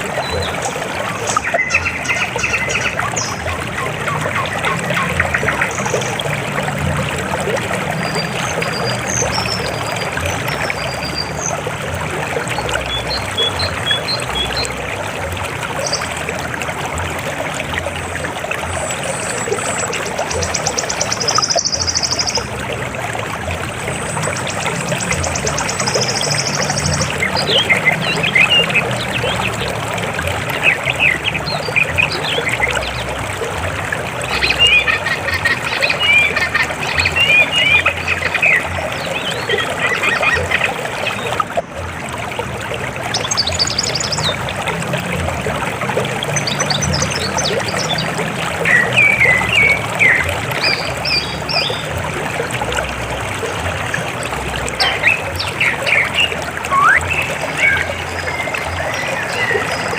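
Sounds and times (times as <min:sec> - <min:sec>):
river water flowing: 0:00.0 - 0:59.9
high chirping calls: 0:54.8 - 0:59.9.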